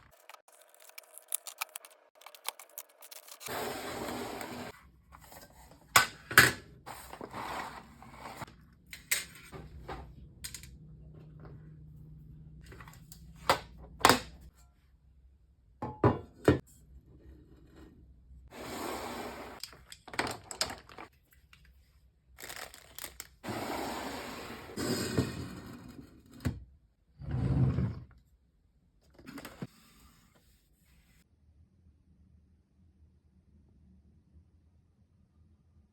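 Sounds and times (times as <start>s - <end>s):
packaging rustling: 0.0s - 3.5s, 22.4s - 23.4s.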